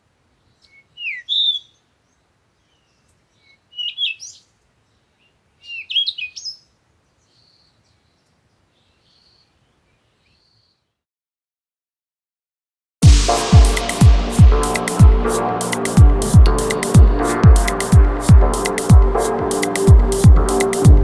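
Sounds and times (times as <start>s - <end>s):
birds chirping and trilling: 0.5s - 10.8s.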